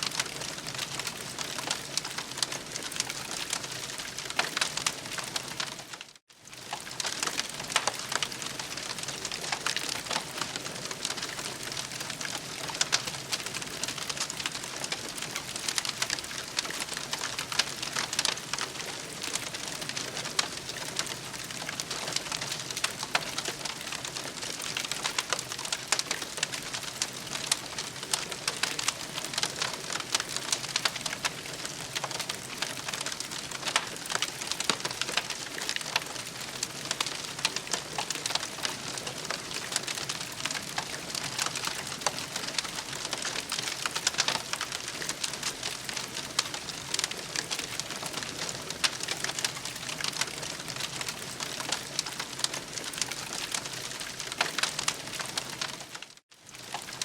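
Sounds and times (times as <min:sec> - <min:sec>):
campfire crackling: 0:00.0 - 0:57.0.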